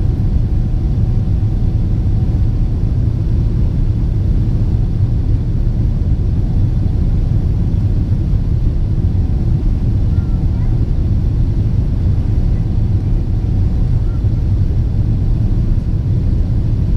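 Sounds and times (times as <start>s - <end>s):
airplane cabin engine rumble: 0.0s - 16.9s.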